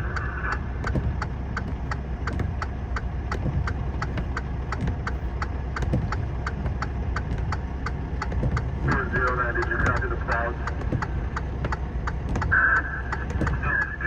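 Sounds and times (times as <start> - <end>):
vehicle engine idling: 0.0 - 14.0
rapid regular clicking: 0.1 - 14.0.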